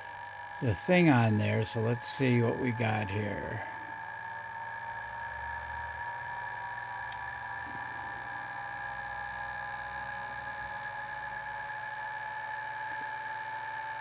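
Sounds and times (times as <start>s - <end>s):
faint low hum: 0.0s - 5.3s
motor high-pitched whine: 0.0s - 14.0s.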